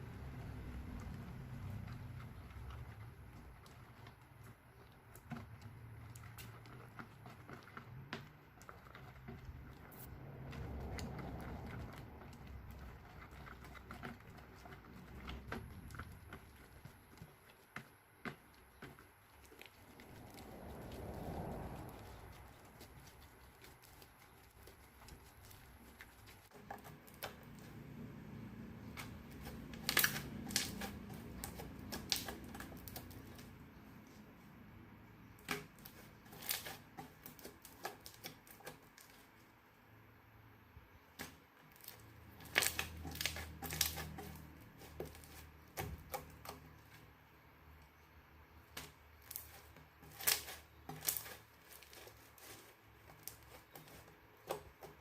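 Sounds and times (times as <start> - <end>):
slime popping and crackling: 29.3 - 33.5, 41.7 - 44.3.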